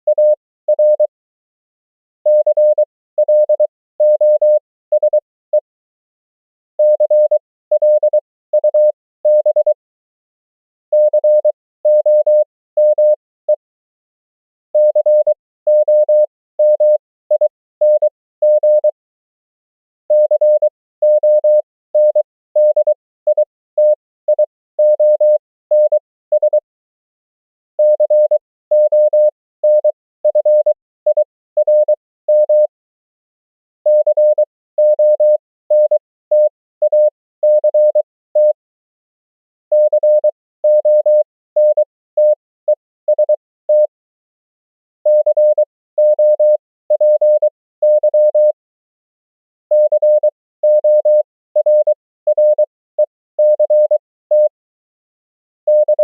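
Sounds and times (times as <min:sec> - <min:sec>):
morse code tone: 0:33.9 - 0:38.6, 0:39.7 - 0:44.0, 0:45.1 - 0:48.6, 0:49.7 - 0:54.6, 0:55.7 - 0:56.0.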